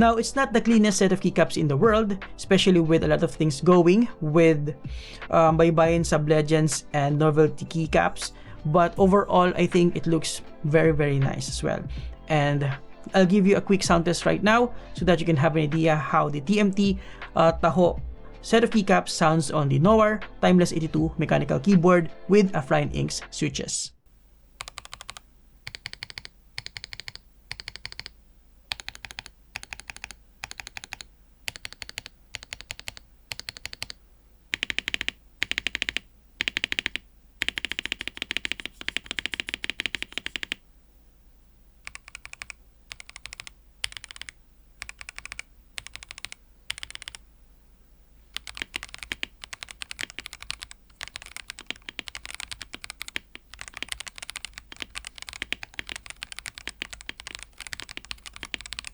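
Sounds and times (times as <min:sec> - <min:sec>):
mechanical keyboard typing: 0:24.6 - 0:40.6, 0:41.8 - 0:47.2, 0:48.4 - 0:58.9.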